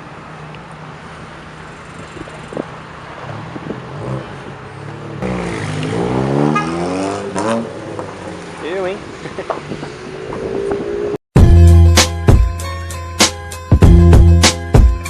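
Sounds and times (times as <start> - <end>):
road noise: 0.0 - 15.0
engine revving: 3.2 - 8.4.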